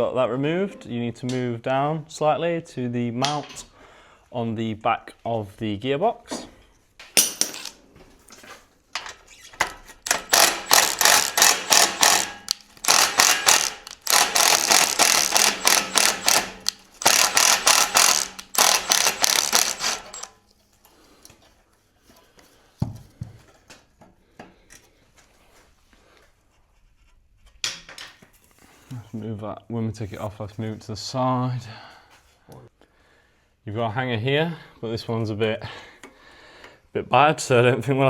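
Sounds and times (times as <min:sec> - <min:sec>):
socket ratchet clicking: 0:10.0 - 0:20.3.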